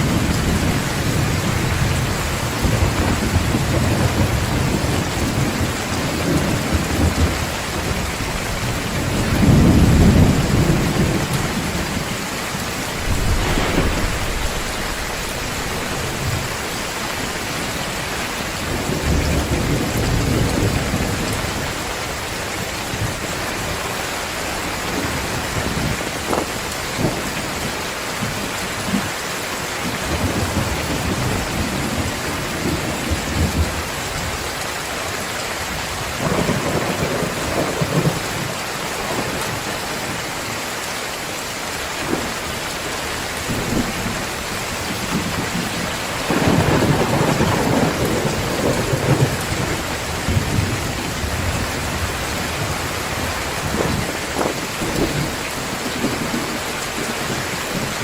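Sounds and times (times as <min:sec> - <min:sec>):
thunder rumbling: 0:00.0 - 0:21.9, 0:43.1 - 0:58.0
heavy rain: 0:00.0 - 0:58.0.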